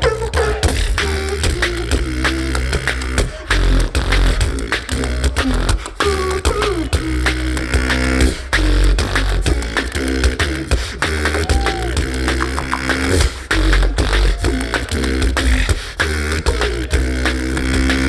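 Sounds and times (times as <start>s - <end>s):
beatboxing drum and bass: 0.0s - 18.0s
hummed gliding bass lines: 0.0s - 18.0s.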